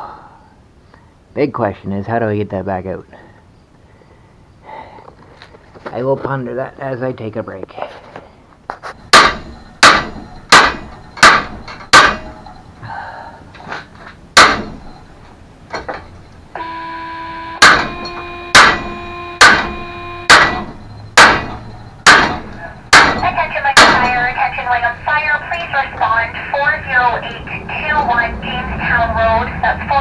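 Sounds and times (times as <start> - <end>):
hammer blows on metal: 9.0 - 12.5, 14.4 - 15.0, 16.6 - 24.7
steady pitched tone: 16.5 - 30.0.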